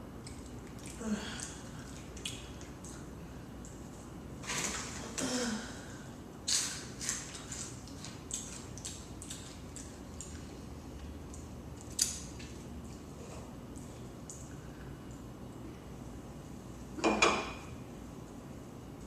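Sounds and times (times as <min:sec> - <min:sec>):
wet chewing: 0:07.0 - 0:12.6.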